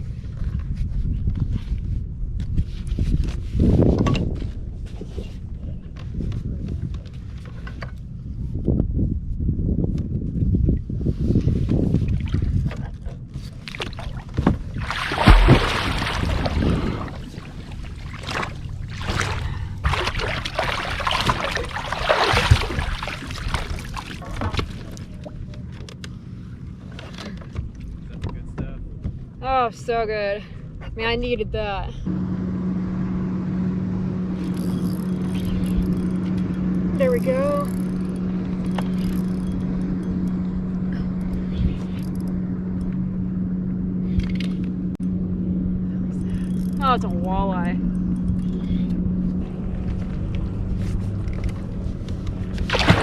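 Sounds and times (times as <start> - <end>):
low motor hum: 0.0 - 53.0
water splashing around kayak: 11.2 - 28.1, 48.2 - 53.0.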